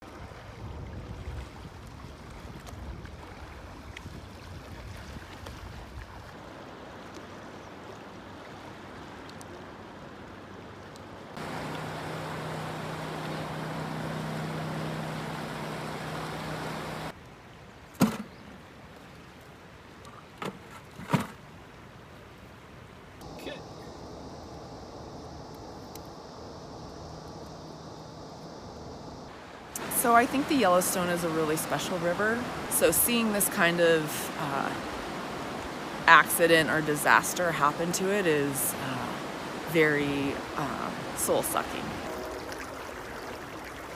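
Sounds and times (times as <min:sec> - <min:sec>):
flowing river water: 0:00.0 - 0:43.9
boat motor humming: 0:11.4 - 0:17.1, 0:23.2 - 0:43.9.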